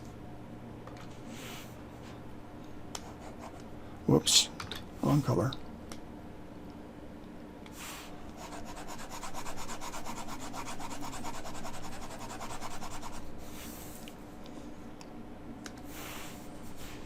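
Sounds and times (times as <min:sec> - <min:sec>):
stylus rubbing on pad: 0:08.4 - 0:13.8.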